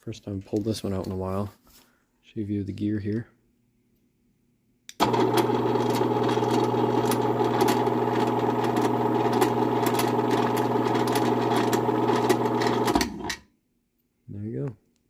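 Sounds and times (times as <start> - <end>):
electric motor hum: 5.0 - 13.4.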